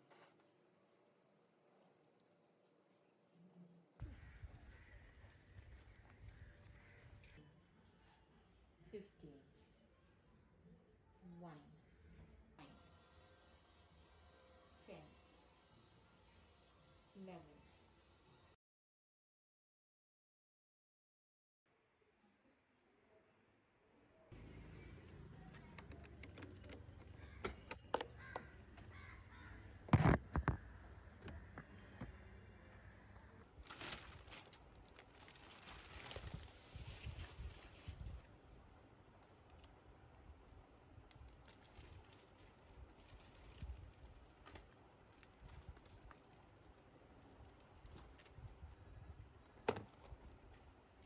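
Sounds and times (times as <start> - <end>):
small clicks: 25.4 - 28.4.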